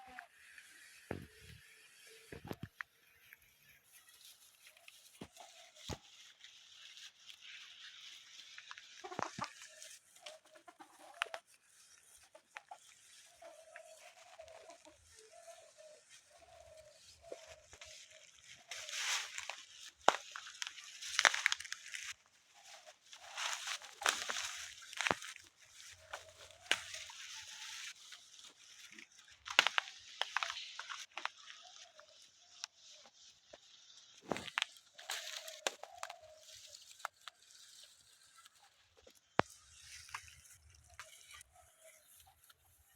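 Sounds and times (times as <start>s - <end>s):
chickens clucking: 8.9s - 11.4s, 34.2s - 36.4s.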